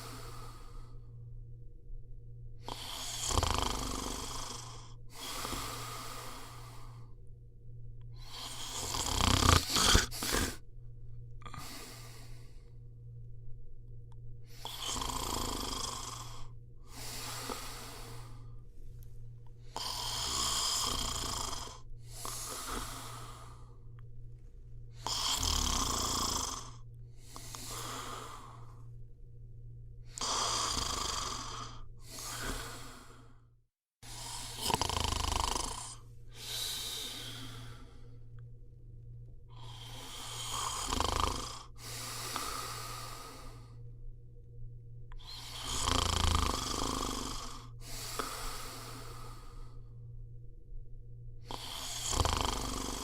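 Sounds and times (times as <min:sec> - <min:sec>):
person snoring: 0:00.0 - 0:01.2, 0:02.6 - 0:07.2, 0:08.1 - 0:10.6, 0:11.4 - 0:12.8, 0:14.5 - 0:18.6, 0:19.6 - 0:24.0, 0:24.9 - 0:28.9, 0:30.0 - 0:33.4, 0:34.0 - 0:38.5, 0:39.5 - 0:43.8, 0:45.1 - 0:50.0, 0:51.4 - 0:53.0
steady low hum: 0:00.0 - 0:53.0.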